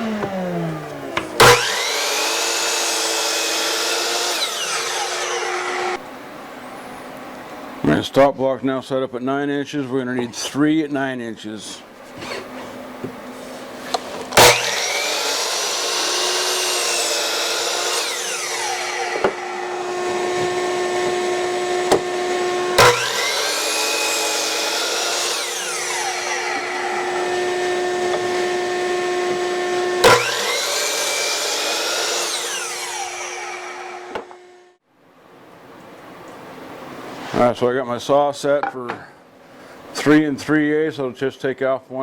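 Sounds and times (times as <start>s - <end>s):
miter saw cutting wood: 0.0s - 6.0s, 13.8s - 34.8s.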